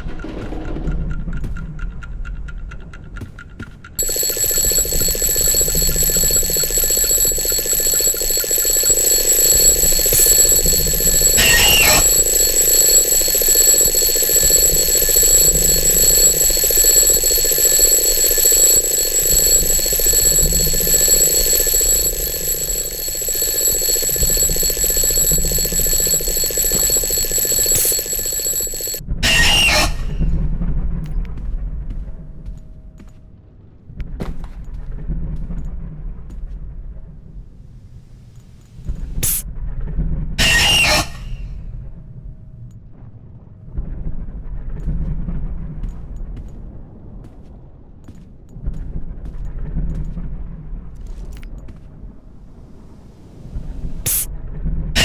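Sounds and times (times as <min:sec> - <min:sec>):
alarm clock ringing: 0:04.0 - 0:30.2.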